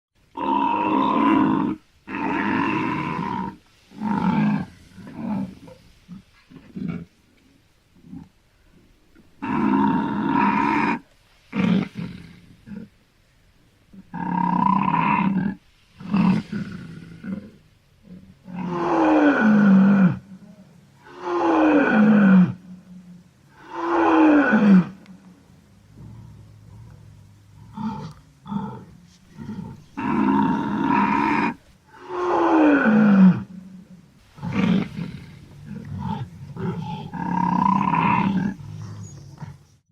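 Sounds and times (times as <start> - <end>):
wild boar calling: 17.2 - 39.7.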